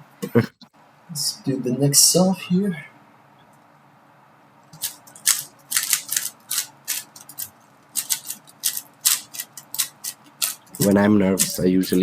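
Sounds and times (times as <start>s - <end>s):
puzzle cube clicking: 4.8s - 11.6s.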